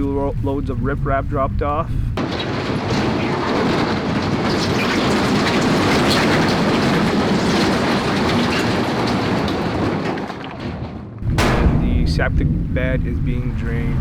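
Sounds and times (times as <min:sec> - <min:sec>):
rocks clattering and tumbling: 0:02.2 - 0:12.0.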